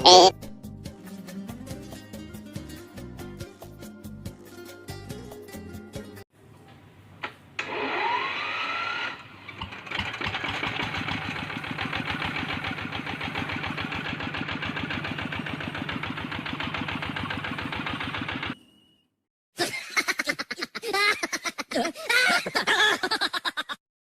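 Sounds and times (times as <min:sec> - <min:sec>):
engine starter whine: 0:07.2 - 0:19.2
engine running with fast beat: 0:09.6 - 0:18.6.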